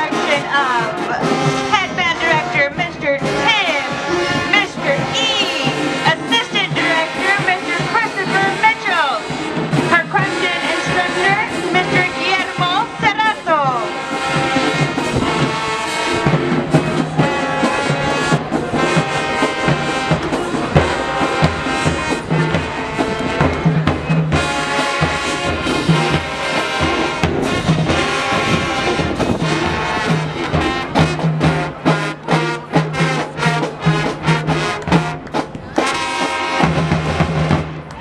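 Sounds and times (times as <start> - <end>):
brass holding loud chords: 0.0 - 37.8
marching band playing: 0.0 - 38.0
drum hits: 13.0 - 37.9.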